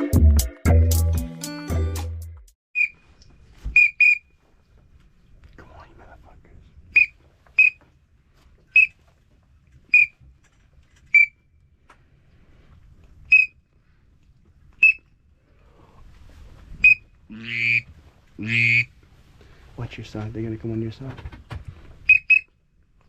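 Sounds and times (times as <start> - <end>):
high duck whistle notes: 3.8 - 4.2, 7.0 - 7.8, 9.9 - 10.1, 13.3 - 13.5, 16.8 - 18.9
rasping duck call: 17.3 - 18.9.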